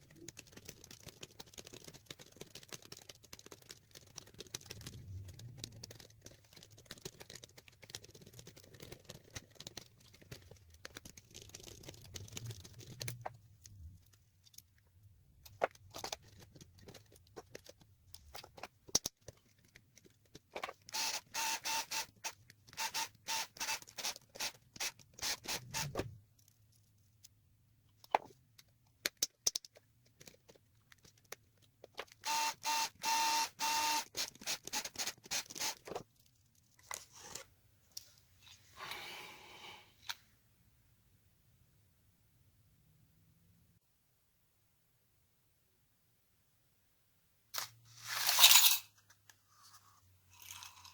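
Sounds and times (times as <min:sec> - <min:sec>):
small clicks and taps: 0:15.4 - 0:21.0, 0:27.2 - 0:32.2.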